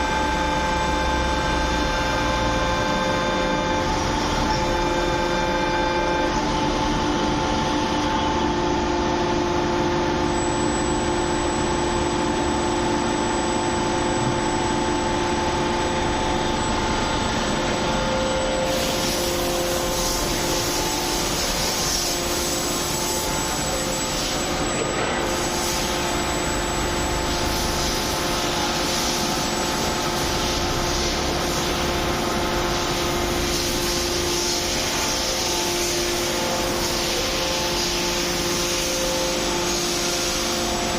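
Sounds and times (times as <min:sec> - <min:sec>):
hydraulic press machine drone: 0:00.0 - 0:40.9
steady whining tones: 0:00.0 - 0:40.9
hiss: 0:18.7 - 0:23.1.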